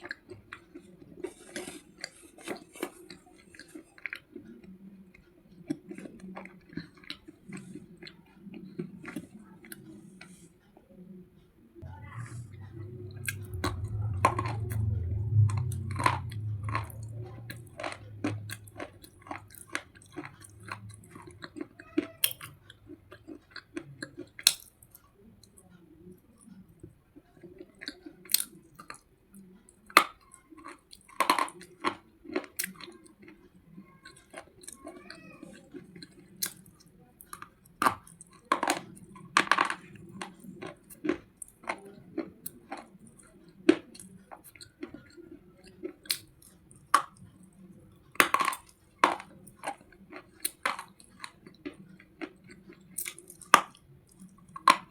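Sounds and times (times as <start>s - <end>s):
low rumble: 11.8s - 21.8s.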